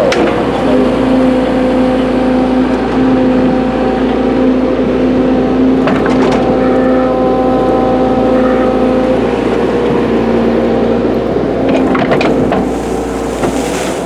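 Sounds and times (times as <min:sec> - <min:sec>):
excavator engine drone: 0:00.0 - 0:14.0.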